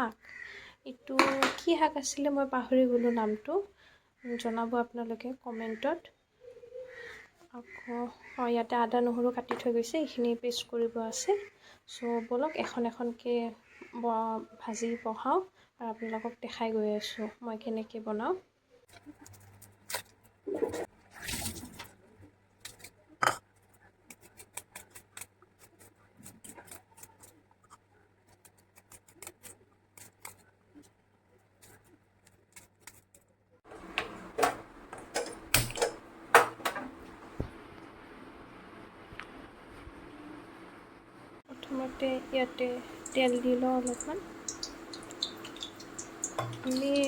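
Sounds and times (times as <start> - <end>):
faint background hum: 33.4 - 47.0
cookware clattering: 33.7 - 37.0, 43.1 - 47.0
kitchen utensils tapping and clicking: 33.7 - 37.0, 42.8 - 47.0.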